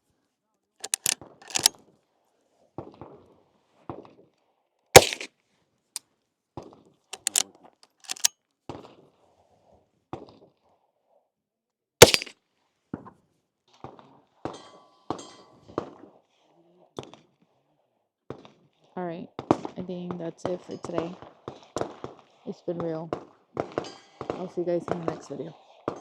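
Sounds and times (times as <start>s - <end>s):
gunshot cracks: 5.0s - 5.3s, 12.0s - 12.3s.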